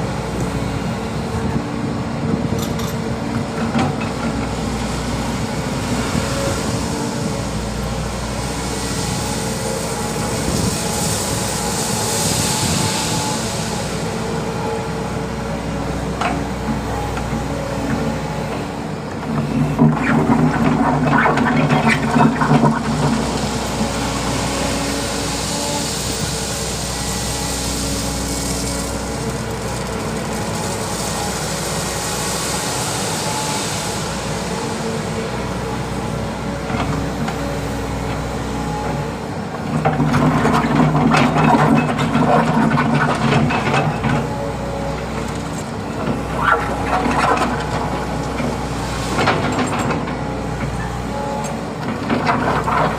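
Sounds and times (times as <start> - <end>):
excavator diesel engine running: 0.0 - 52.9
hiss: 6.2 - 15.0, 22.4 - 36.1.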